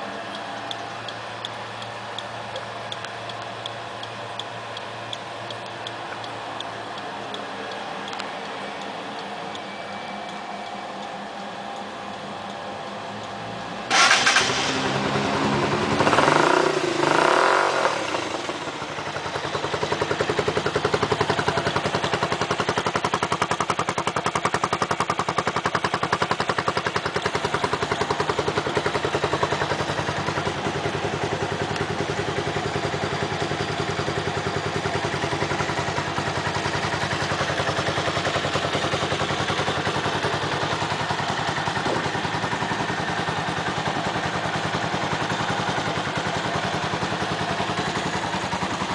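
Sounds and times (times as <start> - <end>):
motorcycle engine idling: 0.0 - 48.9
motorcycle engine revving: 11.6 - 48.9.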